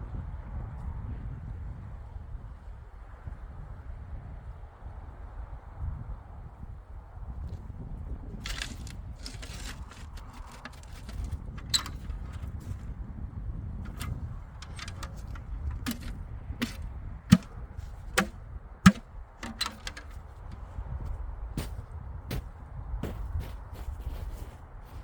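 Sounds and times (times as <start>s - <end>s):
wooden knocks from firewood: 8.4s - 12.8s, 13.8s - 17.5s, 18.1s - 20.6s.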